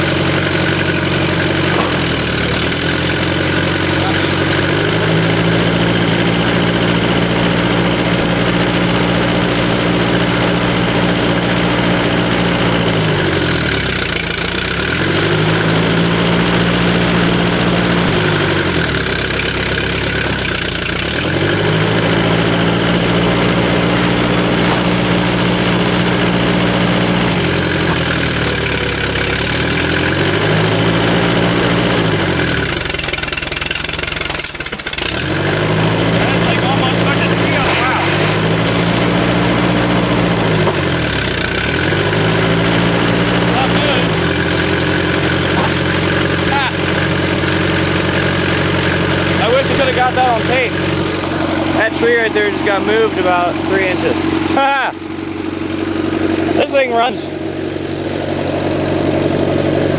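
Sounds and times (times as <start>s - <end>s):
dozer engine lugging under load: 0.0s - 59.9s.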